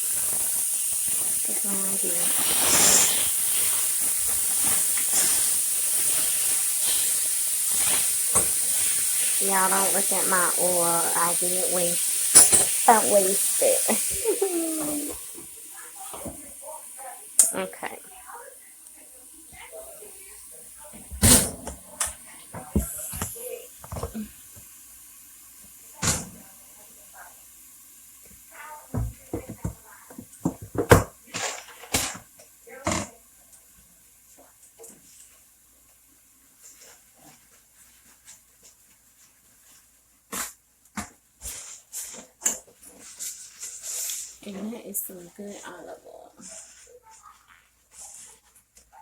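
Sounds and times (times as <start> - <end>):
hissing clatter: 0.0 - 24.7
meat sizzling in oil: 0.0 - 31.3
cookware and utensils knocking: 12.3 - 12.9.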